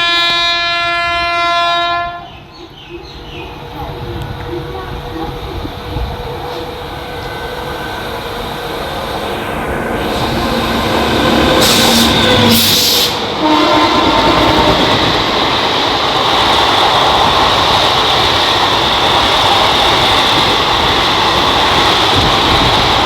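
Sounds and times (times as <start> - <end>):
train horn: 0.0 - 2.5, 10.0 - 15.2
train rushing past: 0.0 - 23.0.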